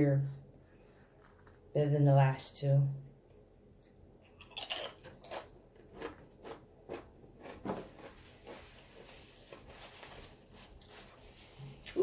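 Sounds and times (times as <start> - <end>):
crackly eating clicks and rustles: 3.8 - 9.7.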